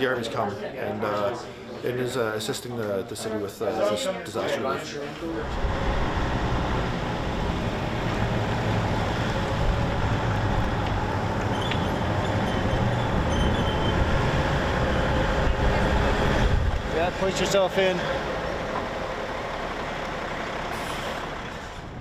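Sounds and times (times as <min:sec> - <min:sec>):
engine rumble: 0:05.2 - 0:22.0
road hiss: 0:19.1 - 0:22.0.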